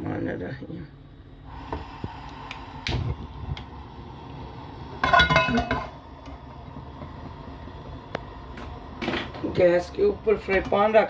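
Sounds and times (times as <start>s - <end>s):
frying pan clattering on hob: 5.0s - 6.0s.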